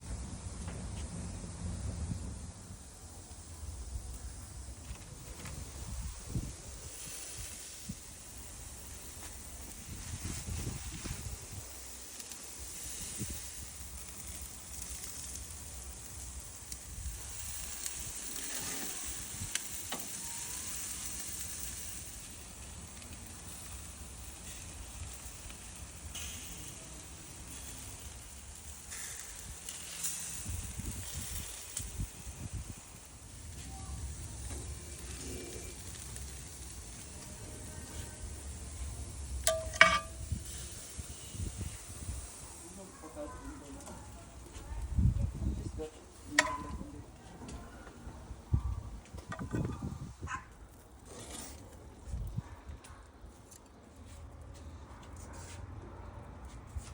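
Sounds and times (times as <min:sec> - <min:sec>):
food sizzling on a grill: 0:00.2 - 0:52.4
sharp metallic clinks: 0:39.4 - 0:40.6
sharp pops: 0:46.2 - 0:46.9.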